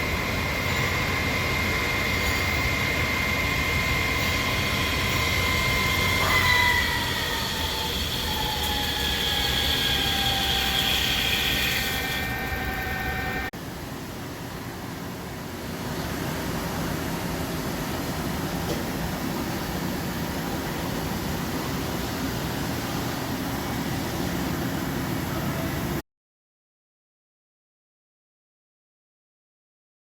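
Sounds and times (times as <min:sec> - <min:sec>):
lathe machining noise: 0:00.0 - 0:13.5
lathe whine: 0:00.0 - 0:13.5.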